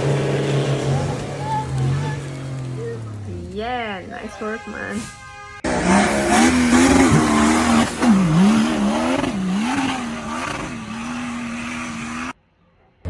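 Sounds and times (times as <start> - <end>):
engine revving hard: 5.6 - 12.4.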